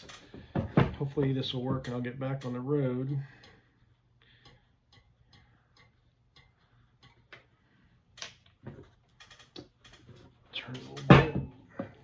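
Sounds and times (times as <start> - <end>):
faint even ticking: 1.2 - 7.8.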